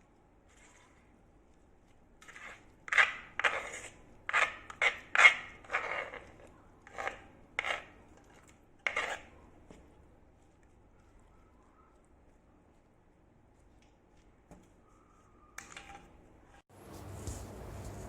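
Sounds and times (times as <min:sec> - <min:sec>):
short scrapes and rubs: 0:00.4 - 0:01.2, 0:02.2 - 0:09.4.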